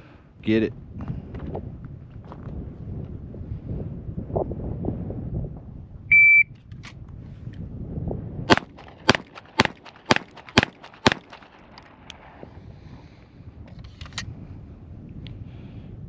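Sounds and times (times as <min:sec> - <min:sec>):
shot timer beep: 0:06.1 - 0:06.5
pistol shots: 0:08.5 - 0:11.8.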